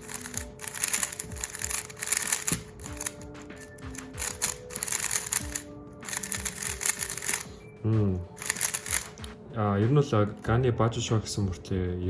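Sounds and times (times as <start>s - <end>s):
puzzle cube layers clicking: 0.0s - 7.5s, 8.4s - 9.2s.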